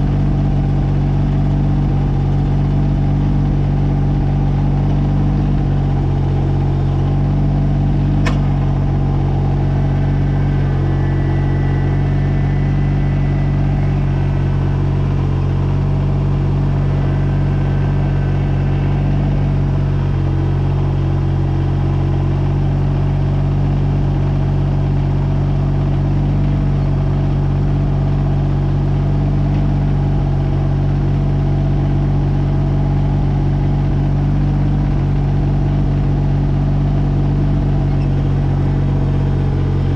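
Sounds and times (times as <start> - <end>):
diesel tractor engine running: 0.0 - 39.9
faint high whine: 0.0 - 39.9
sharp click: 8.2 - 8.6.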